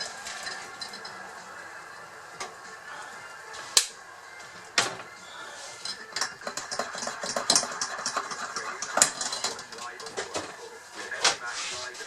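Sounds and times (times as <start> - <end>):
spoon clinking in mug: 5.8 - 9.8.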